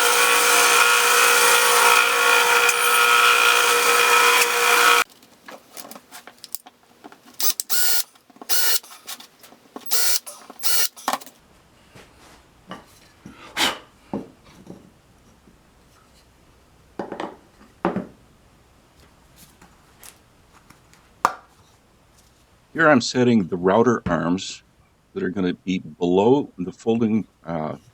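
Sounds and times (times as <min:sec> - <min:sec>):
rasping strokes on wood: 0:00.0 - 0:05.0.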